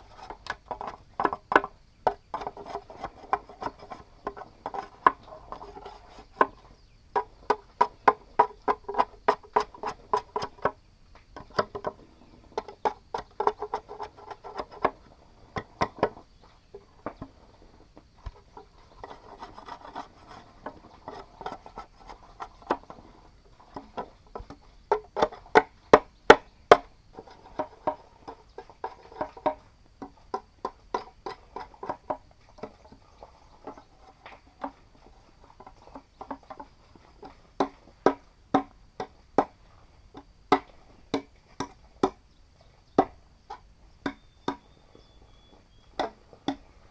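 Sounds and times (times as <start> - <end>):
tools knocking on bamboo: 0.0 - 15.0, 23.7 - 34.9, 35.5 - 42.2, 43.0 - 44.8, 45.9 - 46.7.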